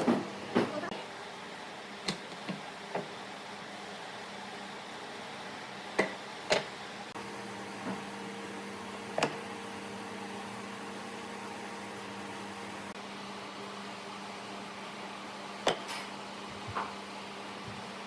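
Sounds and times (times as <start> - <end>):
low machine hum: 7.0 - 15.6.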